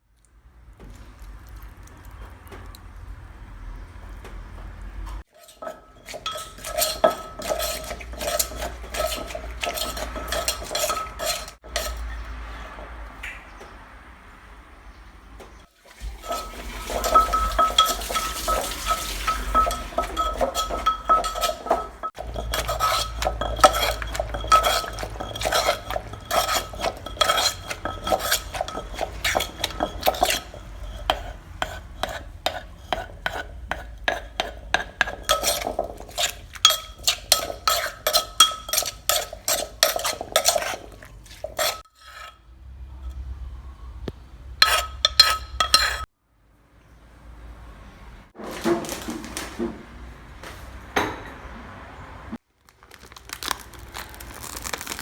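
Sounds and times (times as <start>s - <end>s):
metal utensil stirring in metal pan: 5.3s - 12.8s, 15.9s - 42.4s, 44.6s - 46.1s.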